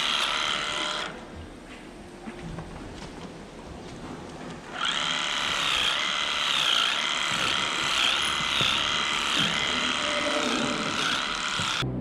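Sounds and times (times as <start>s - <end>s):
electric motor whining: 4.7s - 11.8s.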